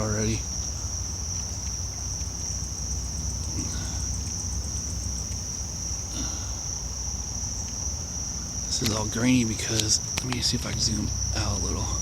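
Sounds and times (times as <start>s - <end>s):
insects chirring: 0.0s - 12.0s
low steady rumble: 0.0s - 12.0s.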